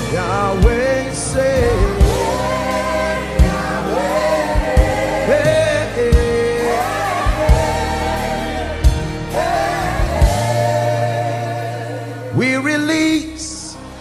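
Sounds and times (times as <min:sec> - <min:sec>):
band playing: 0:00.0 - 0:14.0
voices singing gospel: 0:00.0 - 0:14.0
low drum beat: 0:01.6 - 0:12.0.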